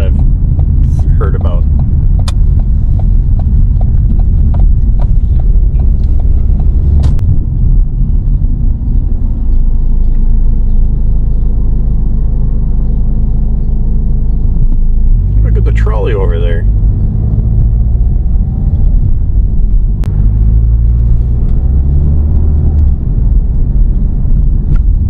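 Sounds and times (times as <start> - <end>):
car road and engine rumble: 0.0 - 25.0.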